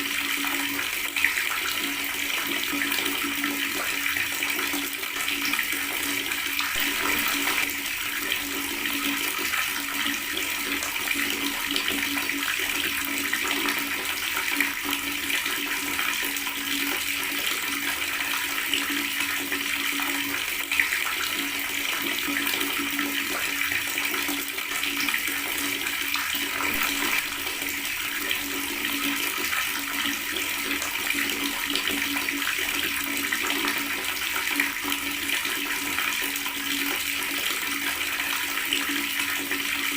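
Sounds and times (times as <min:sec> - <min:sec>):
tap water running: 0:00.0 - 0:39.9.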